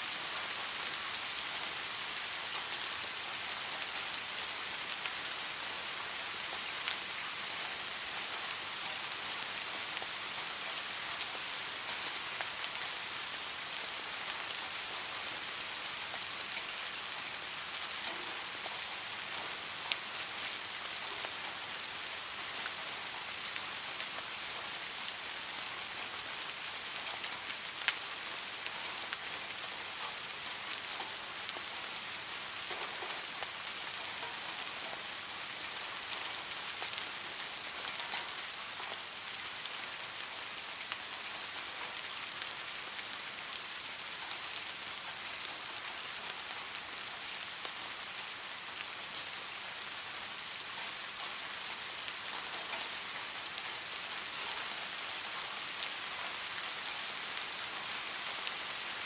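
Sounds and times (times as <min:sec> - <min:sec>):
rain hissing on a surface: 0:00.0 - 0:59.0.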